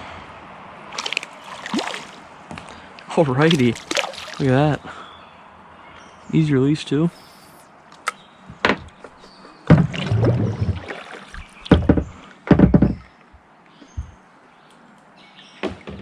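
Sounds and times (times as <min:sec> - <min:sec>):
knocks and thumps against kayak: 0:08.5 - 0:14.2, 0:15.6 - 0:16.0.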